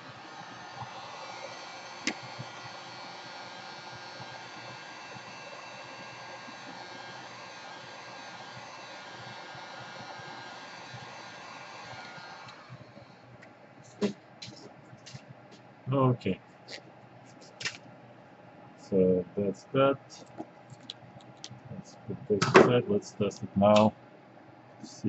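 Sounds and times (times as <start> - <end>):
electric blower whirring: 0.0 - 15.2.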